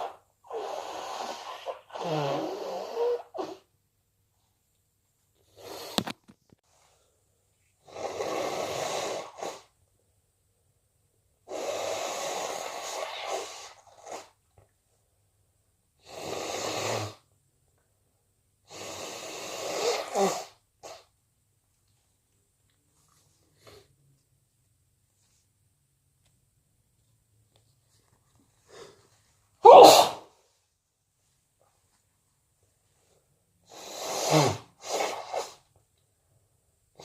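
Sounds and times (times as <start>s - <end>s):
person blowing nose: 0.0s - 3.7s, 5.5s - 6.2s, 7.8s - 9.7s, 11.5s - 14.4s, 16.0s - 17.2s, 18.7s - 21.1s, 29.6s - 30.4s, 33.7s - 35.7s
person sneezing: 29.6s - 30.4s, 33.8s - 35.6s.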